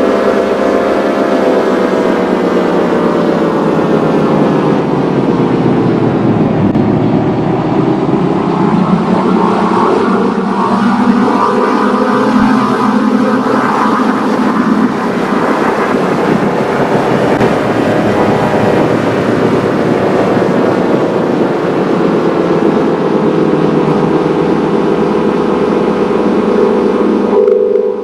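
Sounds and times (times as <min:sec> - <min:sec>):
noisy electronic wash: 0:00.0 - 0:28.0
droning electronic tones: 0:22.6 - 0:28.0.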